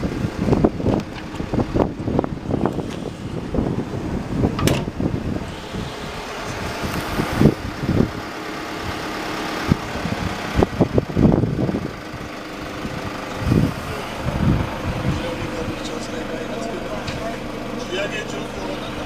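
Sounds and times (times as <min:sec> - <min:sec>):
van mechanical hum: 0:00.0 - 0:19.0
short thumps and knocks: 0:04.6 - 0:04.9.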